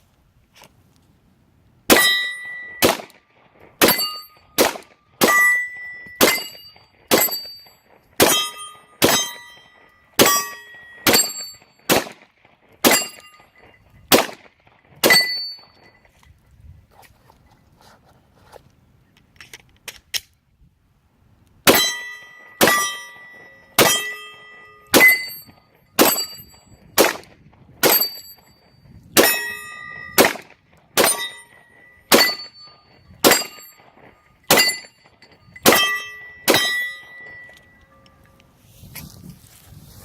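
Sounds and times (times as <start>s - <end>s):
pistol shots with metallic ringing: 1.9s - 16.0s, 21.6s - 38.2s.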